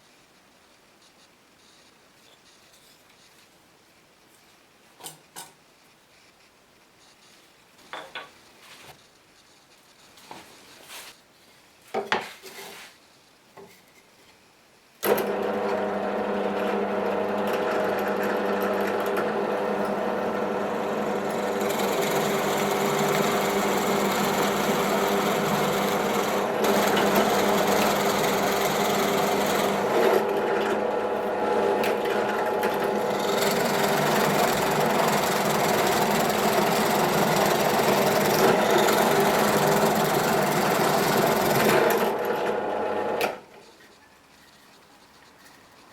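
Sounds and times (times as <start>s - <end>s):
power tool cutting wood: 15.1s - 43.4s.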